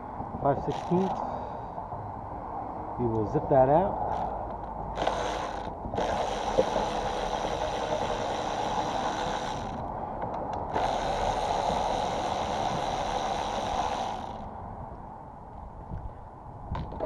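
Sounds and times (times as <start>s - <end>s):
ratchet clicking rapidly: 0.6s - 1.2s, 4.1s - 9.9s, 10.7s - 14.5s.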